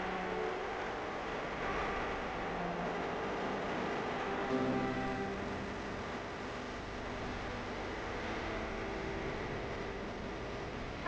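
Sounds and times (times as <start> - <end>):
background music notes: 4.1 - 5.9.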